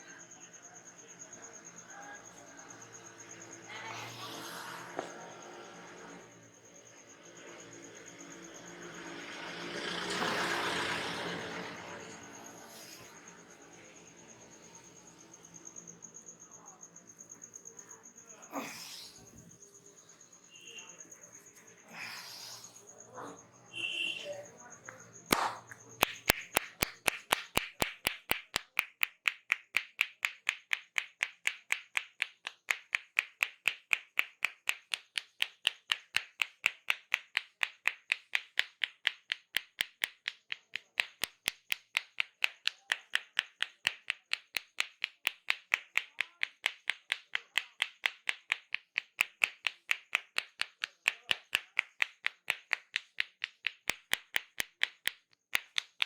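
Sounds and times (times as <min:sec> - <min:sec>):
palms slapping and clapping: 0:02.3 - 0:05.4, 0:24.9 - 0:56.0.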